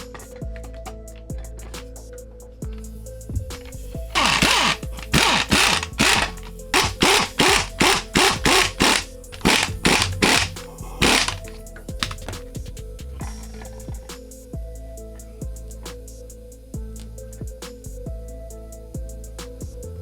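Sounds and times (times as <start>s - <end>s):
background music: 0.0s - 20.0s
power tool whirring bursts: 4.1s - 12.3s.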